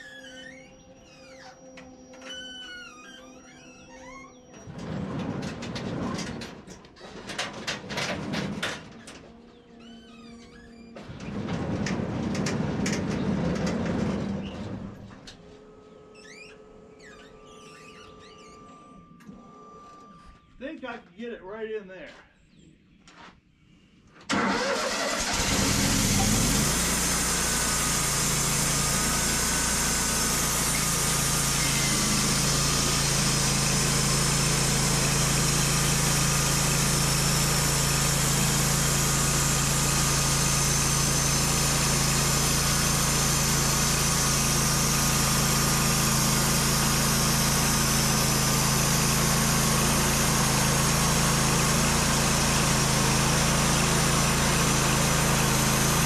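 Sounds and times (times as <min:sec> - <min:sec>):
sawmill engine running: 0:24.3 - 0:56.0
saw cutting through log: 0:25.3 - 0:56.0.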